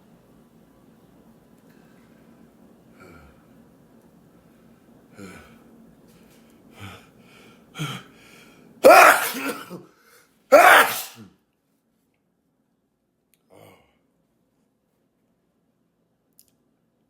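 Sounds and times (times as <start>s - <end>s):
gasping breaths: 5.1s - 5.7s, 6.7s - 9.1s
person sneezing: 8.8s - 9.9s, 10.5s - 11.3s.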